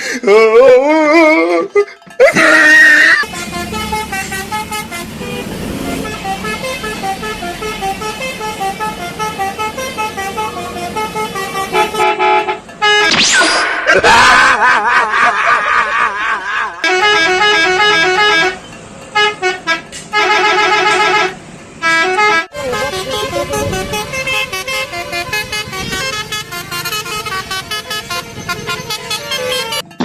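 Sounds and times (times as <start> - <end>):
multi-tone bus horn melody: 3.2 - 13.3, 16.6 - 30.0.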